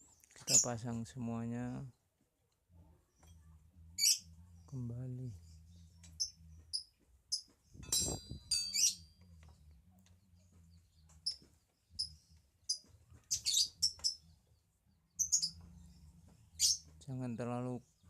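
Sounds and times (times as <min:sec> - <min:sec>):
small bird chirping: 0:00.0 - 0:01.8, 0:02.8 - 0:18.0
metallic clink: 0:07.8 - 0:09.0.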